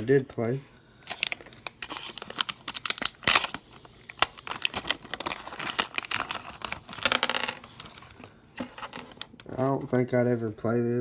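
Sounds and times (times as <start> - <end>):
foil wrapper crinkling: 1.1 - 8.3.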